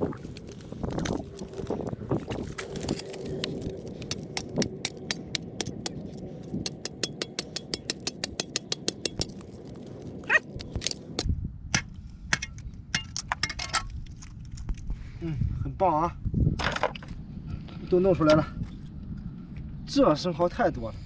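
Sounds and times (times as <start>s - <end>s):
hand tool tapping oyster shells: 2.3s - 11.3s.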